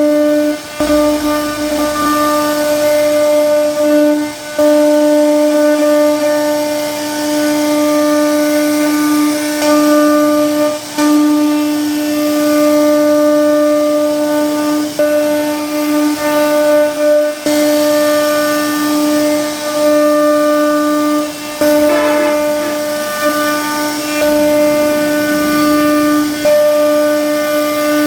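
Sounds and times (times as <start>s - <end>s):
router spindle whining: 0.0s - 5.9s, 21.3s - 28.0s
hiss of cutting wood: 20.8s - 28.0s.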